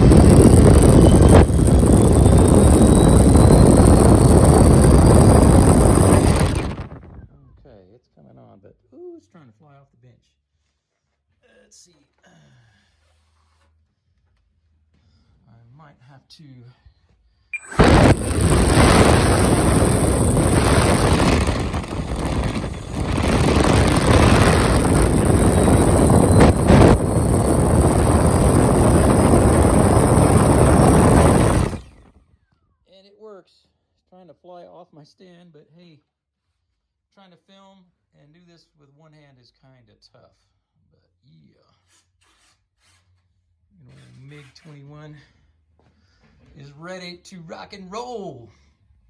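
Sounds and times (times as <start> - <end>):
electric ducted fan whining: 0.0 - 7.3, 17.6 - 32.2.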